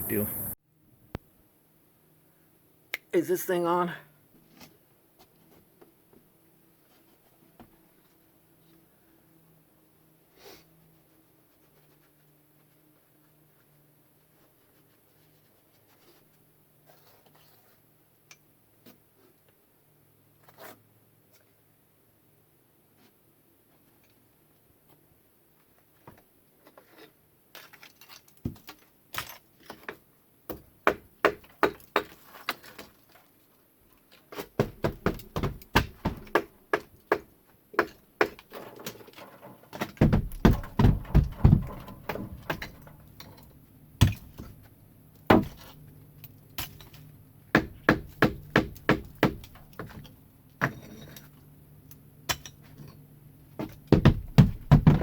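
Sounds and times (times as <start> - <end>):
hammer striking roof: 34.6 - 38.6, 39.7 - 42.9, 45.3 - 45.6, 47.5 - 50.0, 53.6 - 55.0.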